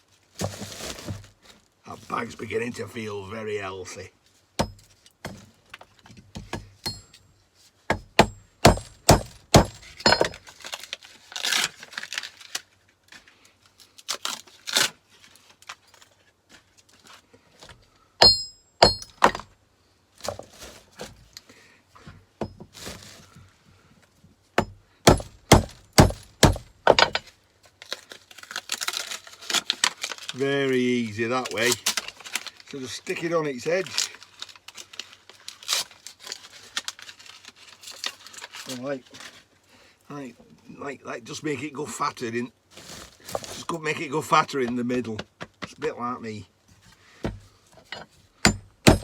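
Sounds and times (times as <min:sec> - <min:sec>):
hammer knocking on metal: 0:07.9 - 0:10.3, 0:18.2 - 0:19.4, 0:48.5 - 0:49.0.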